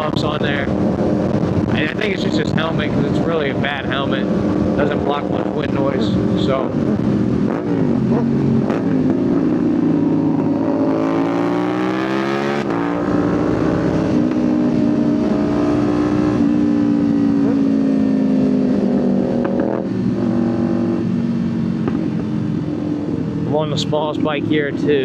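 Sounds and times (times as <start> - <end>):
wind noise: 0.0 - 11.1
motorcycle engine revving: 0.0 - 25.0.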